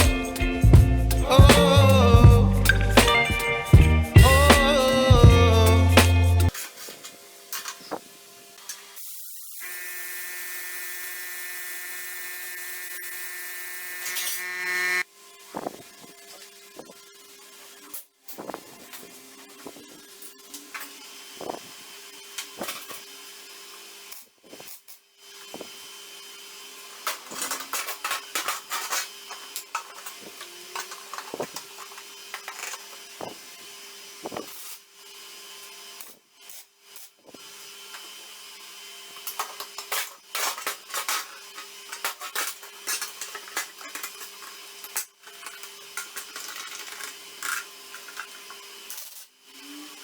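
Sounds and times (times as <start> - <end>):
power tool humming: 0.0 - 6.6, 9.6 - 15.0.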